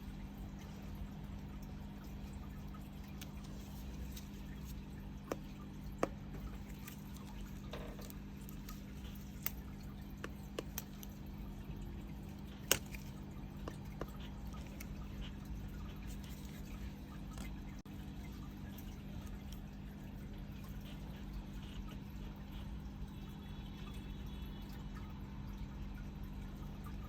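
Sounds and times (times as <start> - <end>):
small clicks and taps: 3.1 - 11.3, 12.4 - 15.0.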